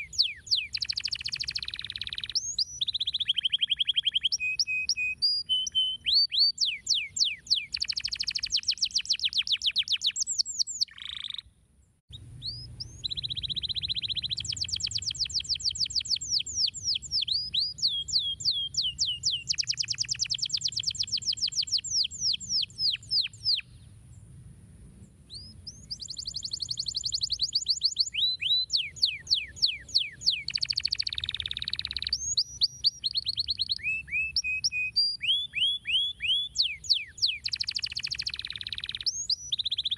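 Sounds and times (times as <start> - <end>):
canary singing trills: 0.0 - 11.5, 12.1 - 23.8, 25.3 - 39.9
faint low hum: 11.6 - 15.4.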